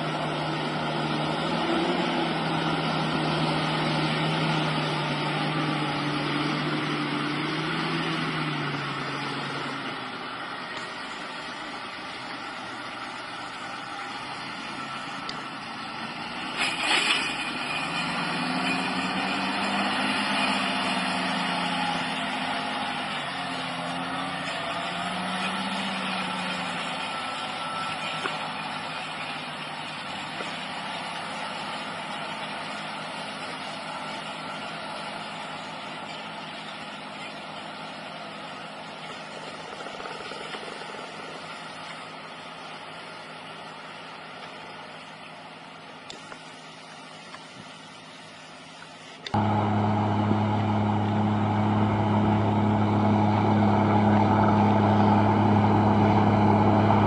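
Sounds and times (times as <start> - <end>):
heavy vehicle engine running: 0.0 - 57.0.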